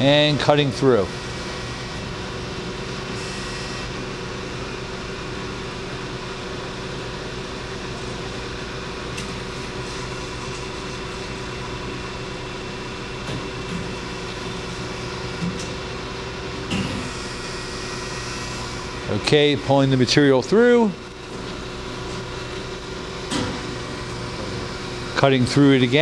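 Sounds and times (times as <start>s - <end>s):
bandsaw running with steady hum: 0.0s - 26.0s.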